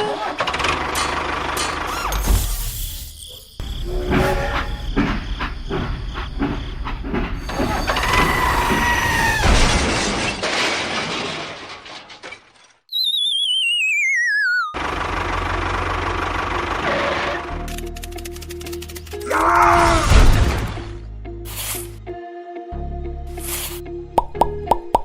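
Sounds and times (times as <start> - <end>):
falling warbling whistle: 12.9 - 14.8
toy machine clatter and knocks: 17.6 - 19.3.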